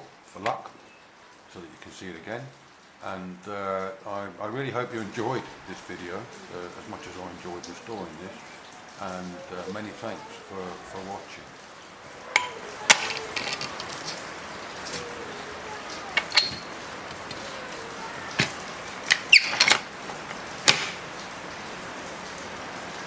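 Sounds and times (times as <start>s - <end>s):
hand corker clanking and clicking: 12.3s - 14.2s, 16.2s - 17.4s, 18.4s - 19.8s.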